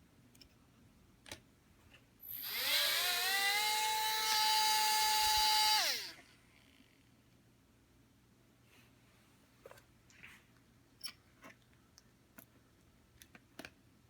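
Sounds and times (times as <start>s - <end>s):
small electric motor whining: 2.3s - 6.4s.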